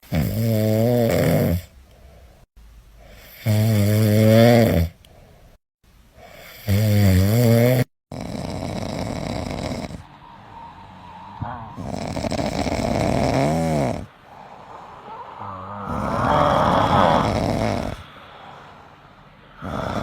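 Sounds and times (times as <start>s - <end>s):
person snoring loudly: 0.0s - 1.7s, 3.2s - 5.0s, 6.3s - 10.0s, 11.8s - 18.9s, 19.6s - 20.0s
rasping breath: 11.4s - 20.0s.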